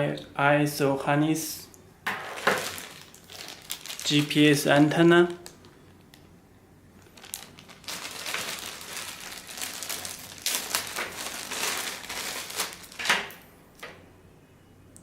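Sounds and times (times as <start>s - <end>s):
plastic bags crinkling: 2.3s - 6.2s, 7.0s - 13.4s.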